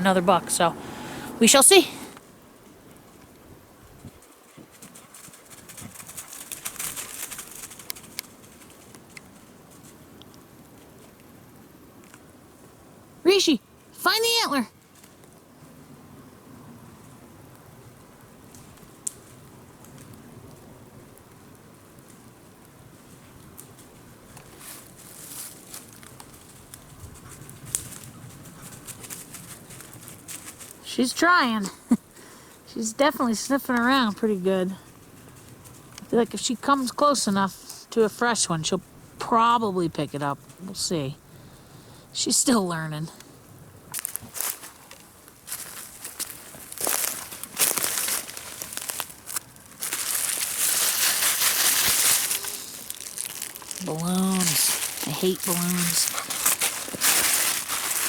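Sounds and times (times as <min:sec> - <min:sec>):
footsteps through dry leaves: 0:24.5 - 0:26.7, 0:43.9 - 0:58.0
twig snapping: 0:43.9 - 0:58.0.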